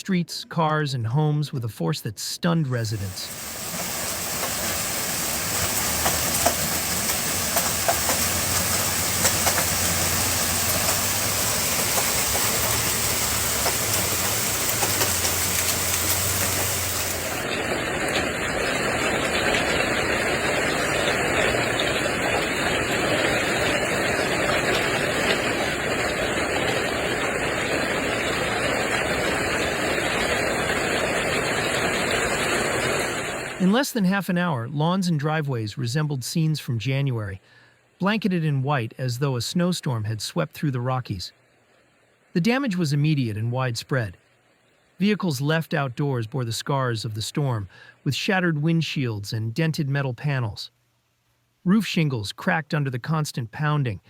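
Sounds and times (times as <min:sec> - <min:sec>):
falling hail and rain: 0:03.0 - 0:33.7
hail pelting down: 0:03.0 - 0:33.7
sharp hail impacts: 0:03.1 - 0:33.6.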